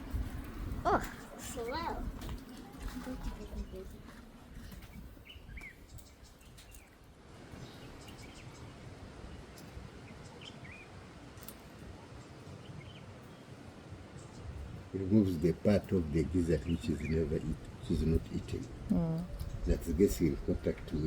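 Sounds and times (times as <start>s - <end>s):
faint outdoor background noise: 0.0s - 21.0s.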